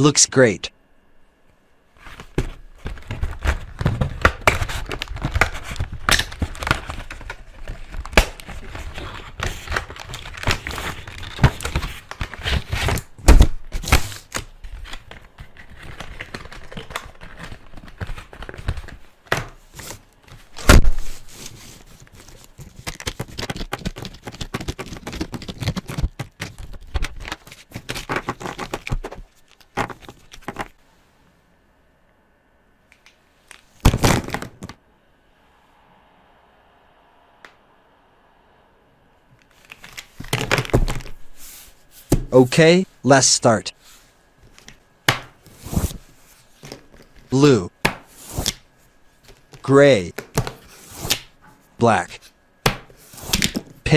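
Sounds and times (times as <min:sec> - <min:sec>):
rustling and crinkling: 0:01.9 - 0:30.8, 0:39.4 - 0:42.2.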